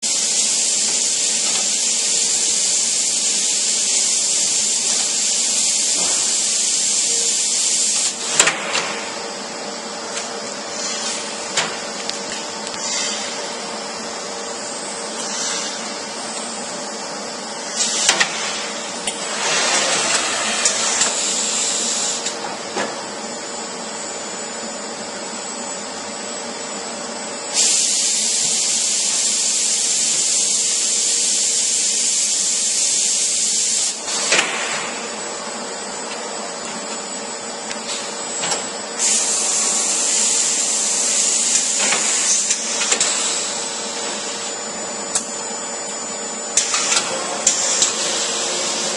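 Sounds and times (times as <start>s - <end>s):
high hissing noise: 9.0s - 22.4s, 27.5s - 35.4s, 39.0s - 44.5s.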